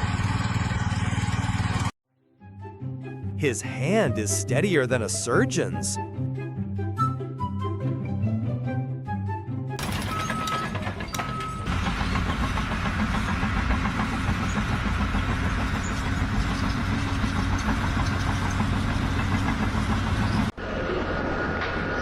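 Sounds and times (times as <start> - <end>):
engine running: 0.0 - 1.9, 9.8 - 22.0.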